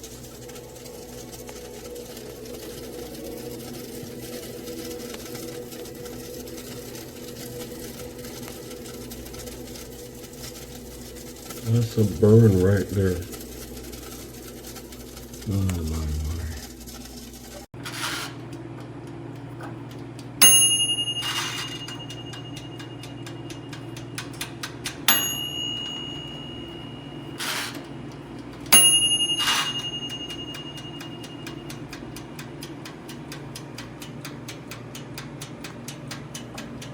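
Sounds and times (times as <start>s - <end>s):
dial timer ticking: 0.0s - 36.9s
timer bell dinging: 20.4s - 33.3s.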